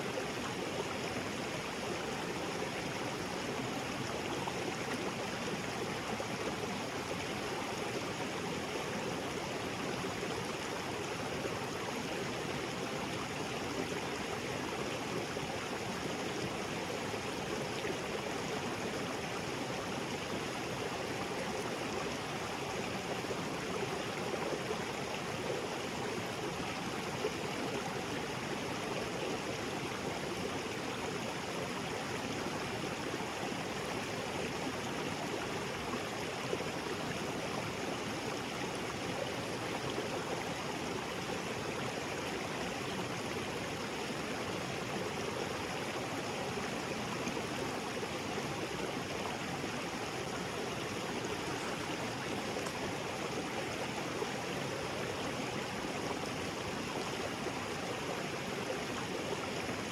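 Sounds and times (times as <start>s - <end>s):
small waterfall rushing: 0.0s - 59.9s.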